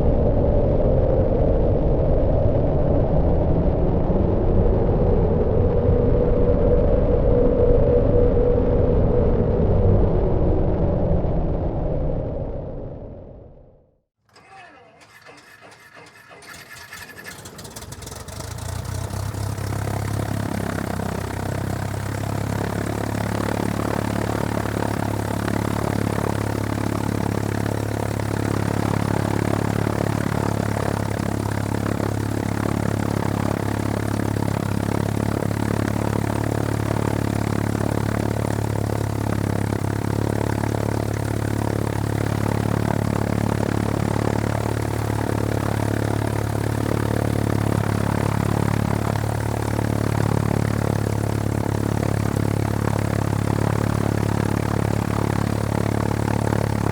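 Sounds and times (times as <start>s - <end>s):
propeller aircraft engine idling: 14.4s - 56.9s.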